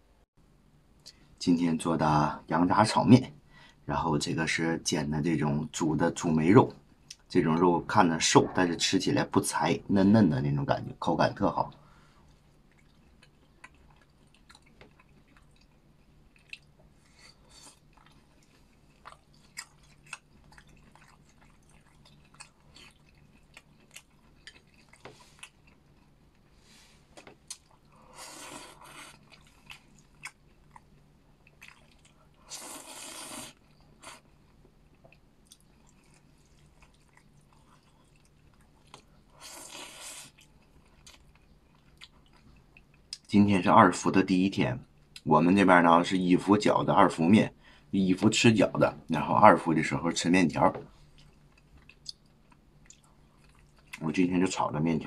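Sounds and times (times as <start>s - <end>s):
person chewing food: 12.2s - 43.3s, 50.9s - 54.0s.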